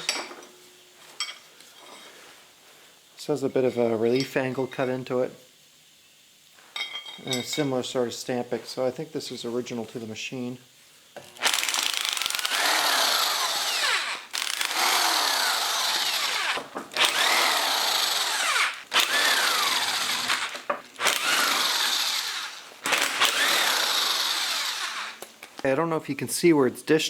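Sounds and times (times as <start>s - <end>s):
electric power tool running: 11.2s - 25.3s.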